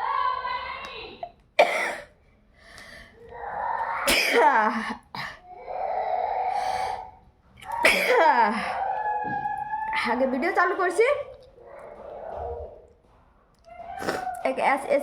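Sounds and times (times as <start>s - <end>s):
person sneezing loudly: 4.0s - 5.0s, 7.7s - 8.6s.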